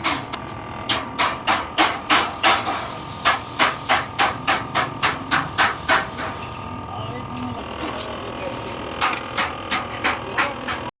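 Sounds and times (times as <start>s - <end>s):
hand hammer striking metal: 0.9s - 6.4s.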